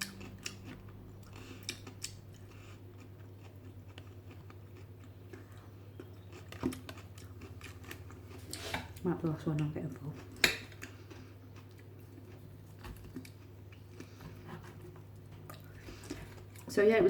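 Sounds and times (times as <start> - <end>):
person chewing food: 0.0 - 9.0, 9.6 - 16.7
low steady hum: 0.0 - 17.0.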